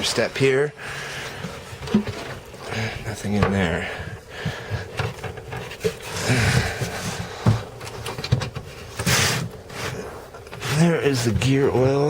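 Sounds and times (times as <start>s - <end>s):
man breathing heavily: 0.8s - 1.8s, 3.7s - 7.9s
knocks and bumps from handling: 1.4s - 11.8s.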